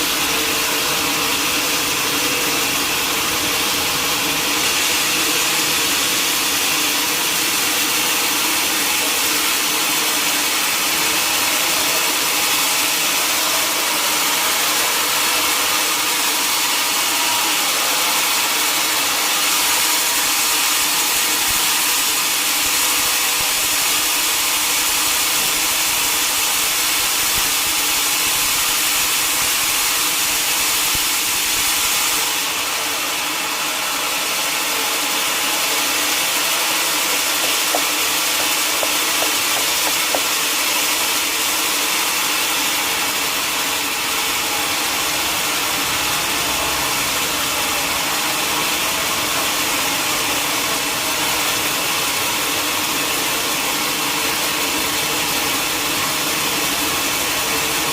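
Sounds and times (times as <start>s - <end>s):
saw hissing: 0.0s - 32.3s, 35.0s - 42.2s
mechanical hum: 0.0s - 57.9s.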